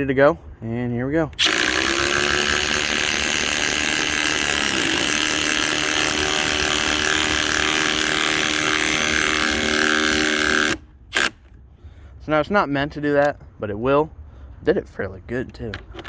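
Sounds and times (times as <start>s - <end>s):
impact driver hammering: 1.4s - 11.5s.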